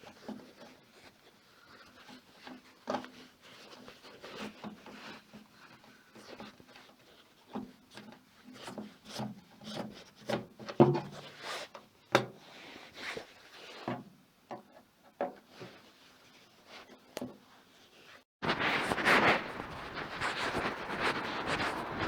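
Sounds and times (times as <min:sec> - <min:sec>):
hard objects scraping: 0:18.4 - 0:22.0.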